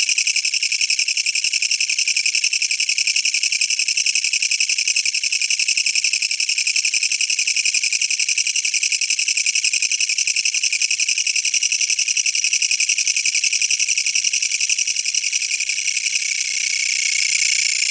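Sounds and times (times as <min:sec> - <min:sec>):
katydid rasping buzz: 0:14.7 - 0:17.9.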